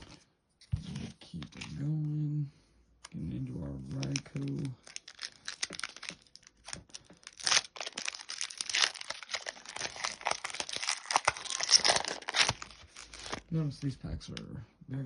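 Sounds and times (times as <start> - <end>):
foil wrapper crinkling and tearing: 3.9 - 13.6.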